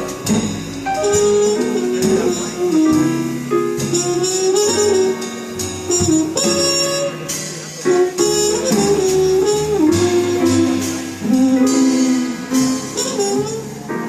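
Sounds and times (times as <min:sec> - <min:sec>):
jazz quartet playing: 0:00.0 - 0:14.0
shimmering cymbals: 0:06.5 - 0:08.7.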